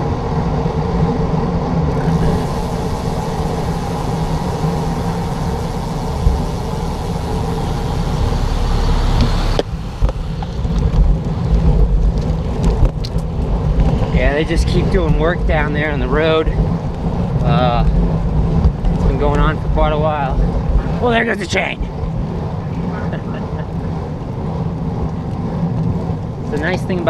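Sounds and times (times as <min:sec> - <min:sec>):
car engines running: 0:00.0 - 0:27.0
wind buffeting microphone: 0:00.0 - 0:27.0.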